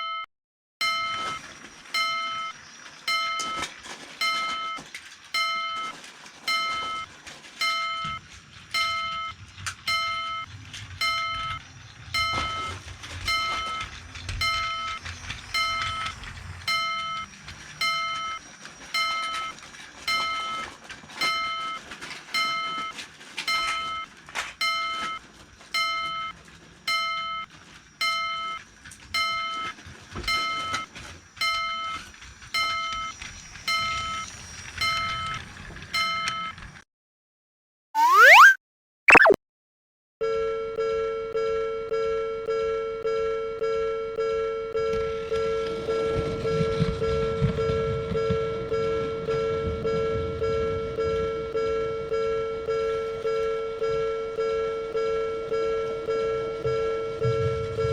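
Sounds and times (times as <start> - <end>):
train running past: 45.1 - 51.6.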